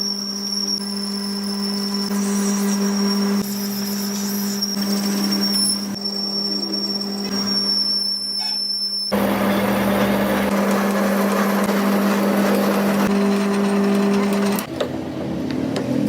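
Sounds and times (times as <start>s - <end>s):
workshop machinery hum: 0.0s - 16.0s
harsh grinding noise: 9.1s - 14.7s.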